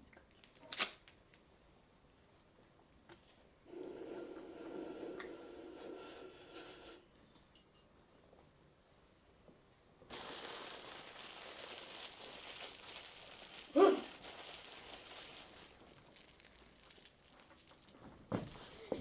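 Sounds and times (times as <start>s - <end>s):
rustling and crinkling: 0.2s - 3.6s, 10.0s - 19.0s.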